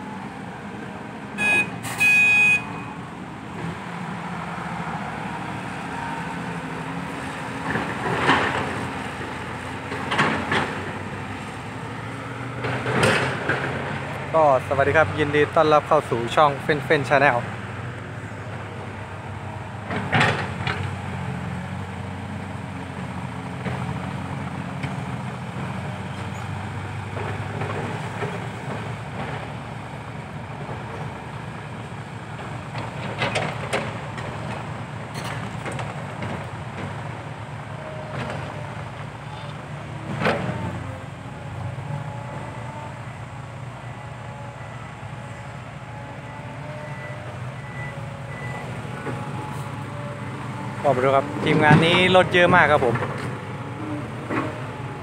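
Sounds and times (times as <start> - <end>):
heavy diesel machinery running: 0.0 - 55.0.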